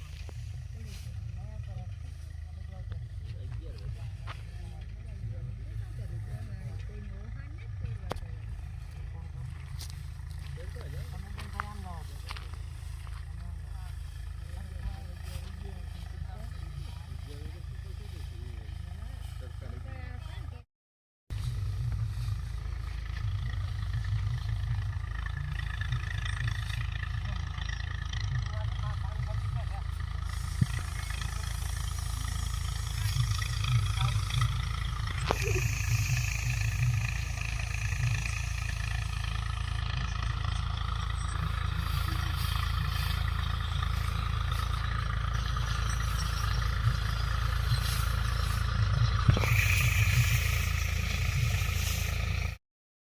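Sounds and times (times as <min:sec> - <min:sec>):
engine low rumble: 0:00.0 - 0:20.7, 0:21.3 - 0:52.6
thresher machine whine: 0:30.0 - 0:52.6.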